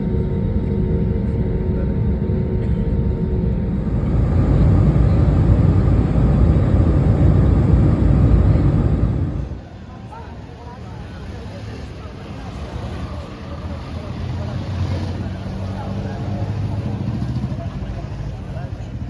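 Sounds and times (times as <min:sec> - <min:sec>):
low rumble of moving vehicle: 0:00.0 - 0:19.0.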